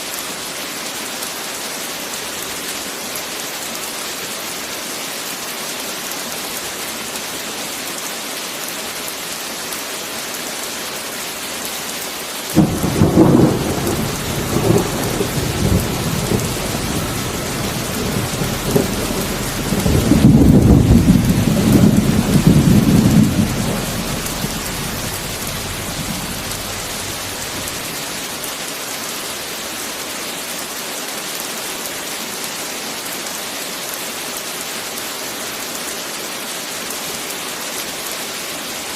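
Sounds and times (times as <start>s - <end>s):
heavy rain: 0.0s - 38.9s
thunder rumbling: 12.6s - 28.0s.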